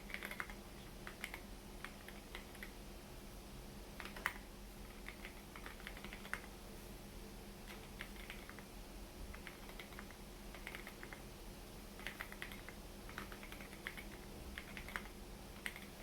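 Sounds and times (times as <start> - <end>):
mechanical keyboard typing: 0.0 - 2.8, 4.0 - 6.5, 7.6 - 8.7, 9.3 - 11.2, 12.0 - 16.0.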